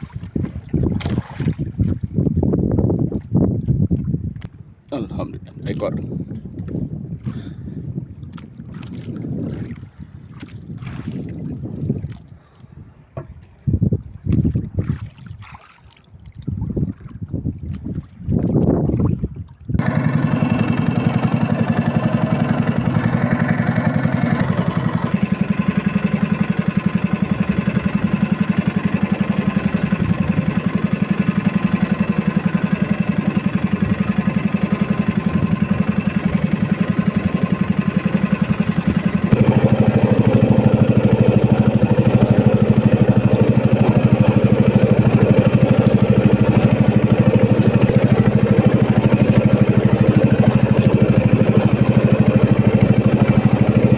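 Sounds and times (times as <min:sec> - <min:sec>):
boat engine running: 0:00.0 - 0:12.2, 0:19.8 - 0:53.9.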